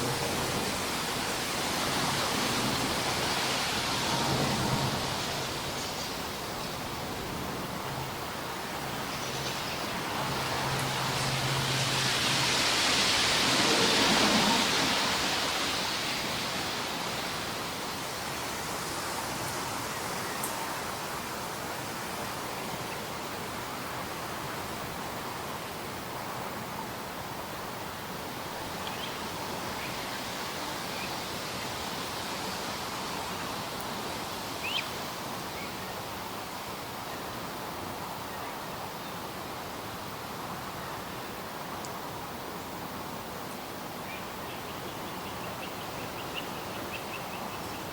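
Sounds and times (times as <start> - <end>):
aircraft engine rushing overhead: 0.0 - 20.0
steady rushing hiss: 0.0 - 47.9.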